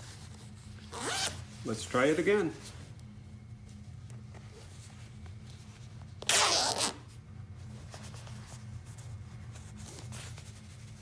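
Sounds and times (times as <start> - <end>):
coat zipper pulled: 0.9 - 1.4, 6.2 - 7.0.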